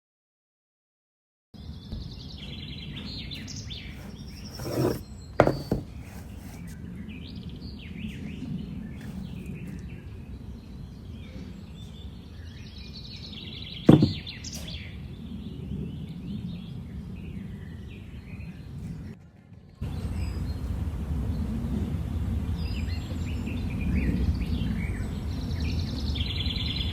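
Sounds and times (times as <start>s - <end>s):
birds chirping: 1.6s - 15.4s
sharp knocks: 4.0s - 6.6s, 13.9s - 14.3s.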